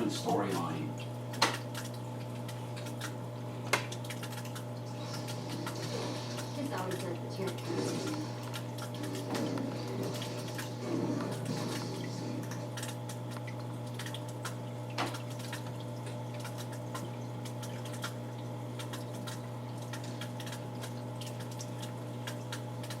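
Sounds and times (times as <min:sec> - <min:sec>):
aquarium filter hum: 0:00.0 - 0:23.0
water trickling and dripping: 0:00.2 - 0:23.0.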